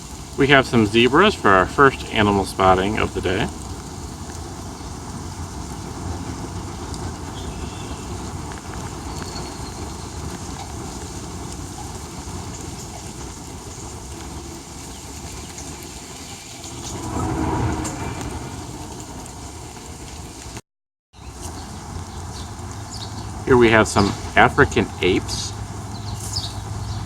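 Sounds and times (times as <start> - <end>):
outdoor rumble and hiss: 0.0 - 20.6, 21.2 - 27.0.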